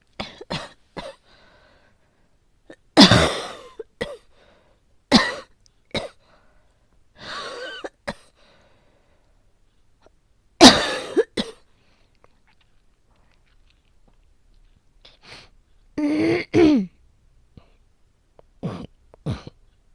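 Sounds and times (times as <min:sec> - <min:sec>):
person coughing harshly: 0:00.2 - 0:01.2, 0:03.0 - 0:04.3, 0:05.1 - 0:06.2, 0:07.3 - 0:08.3, 0:10.6 - 0:11.6, 0:16.0 - 0:16.9, 0:18.6 - 0:19.6
long drawn-in breath: 0:01.2 - 0:02.4, 0:08.4 - 0:09.3.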